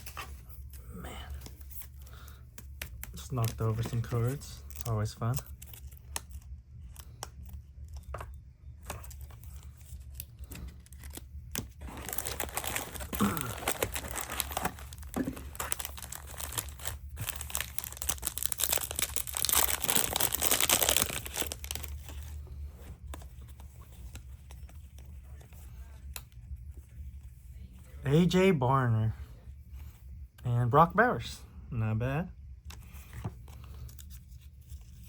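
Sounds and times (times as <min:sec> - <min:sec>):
plastic wrapper tearing and crinkling: 0:09.0 - 0:22.4.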